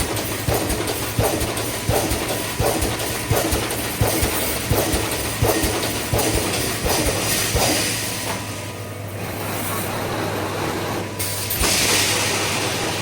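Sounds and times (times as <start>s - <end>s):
mechanical clatter: 0.0s - 8.6s
welding machine humming: 0.0s - 13.0s.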